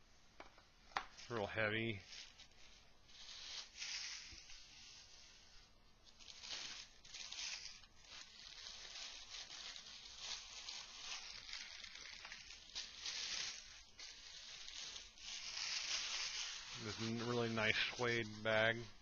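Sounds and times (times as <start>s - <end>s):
packaging rustling and scraping: 1.0s - 19.0s.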